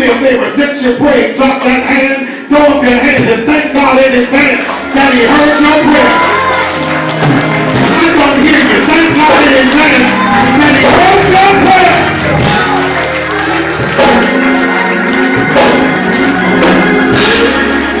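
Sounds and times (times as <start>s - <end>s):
organ notes: 0.0s - 18.0s
steady percussion: 0.9s - 18.0s
voices shouting and singing: 4.2s - 6.8s, 7.8s - 13.1s.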